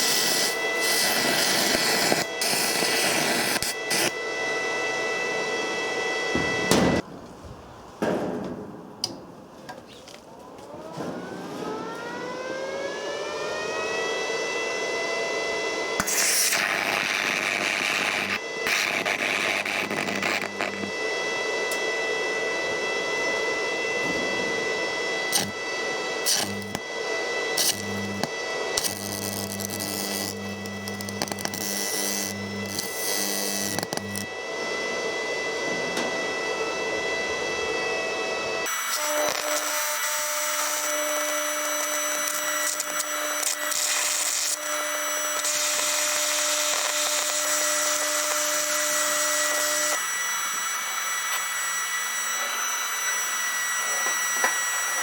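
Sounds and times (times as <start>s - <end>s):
electric arc buzzing and crackling: 0.0s - 4.1s, 16.0s - 20.9s, 25.3s - 25.6s, 26.2s - 26.8s, 27.6s - 34.3s, 38.6s - 50.0s
electric motor whine: 0.0s - 7.0s, 10.6s - 55.0s.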